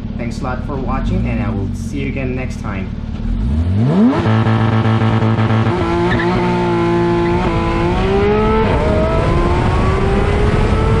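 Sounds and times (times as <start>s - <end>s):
car engine accelerating: 2.8s - 11.0s.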